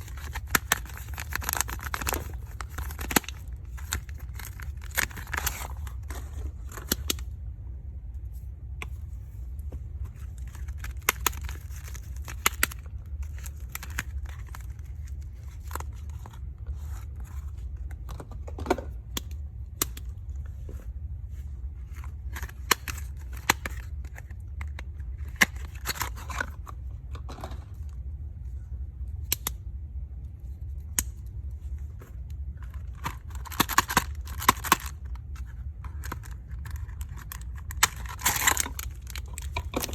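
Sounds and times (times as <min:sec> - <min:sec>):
plastic wrap crinkling: 0:00.0 - 0:06.1, 0:36.0 - 0:39.9
steady low hum: 0:00.0 - 0:39.9.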